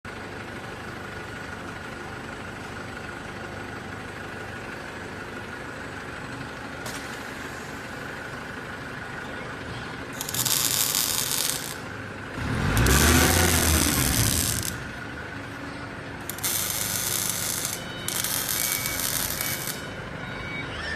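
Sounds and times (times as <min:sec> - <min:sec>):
machine hum with high whine: 0:01.7 - 0:20.9
welding arc hissing crackle: 0:10.2 - 0:15.0, 0:16.2 - 0:19.9.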